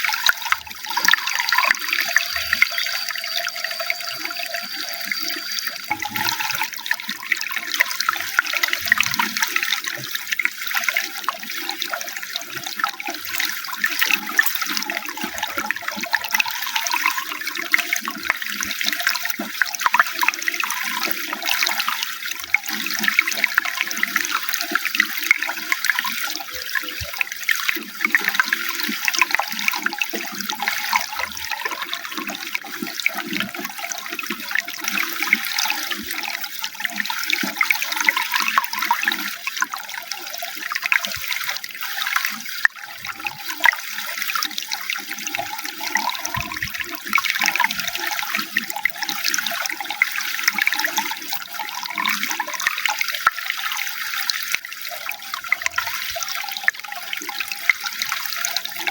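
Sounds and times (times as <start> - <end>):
water pouring and splashing: 0.0 - 58.9.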